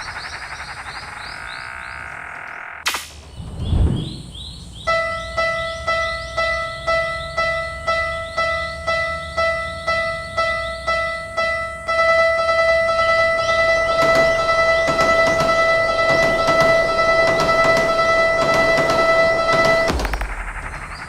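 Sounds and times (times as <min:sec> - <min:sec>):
low thud: 0:03.4 - 0:04.4
level crossing alarm bell ringing: 0:04.9 - 0:20.0.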